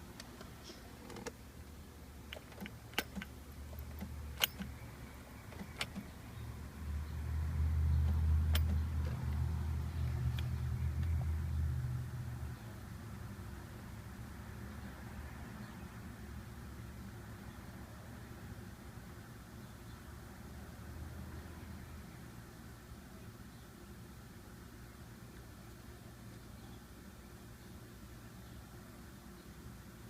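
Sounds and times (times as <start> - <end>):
sharp clicks: 2.3 - 4.8, 5.5 - 6.1, 8.0 - 9.4.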